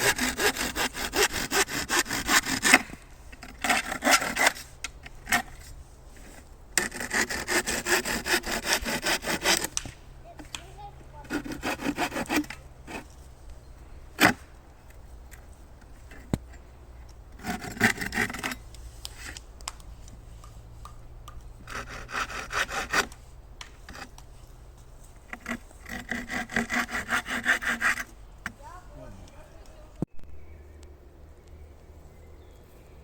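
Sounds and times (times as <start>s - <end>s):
hand saw cutting wood: 0.0s - 9.9s, 10.5s - 13.2s, 17.4s - 19.4s, 21.6s - 24.2s, 25.2s - 28.7s
sharp crack: 9.5s - 10.8s.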